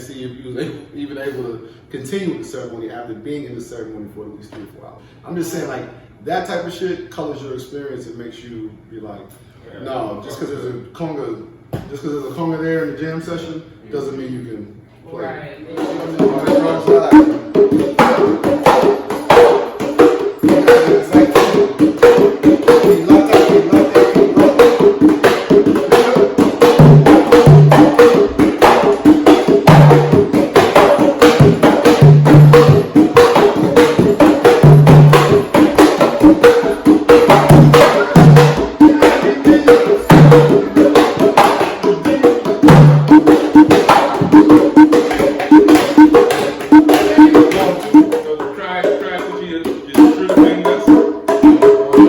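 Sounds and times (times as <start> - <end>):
hand drums playing: 15.7 - 52.0.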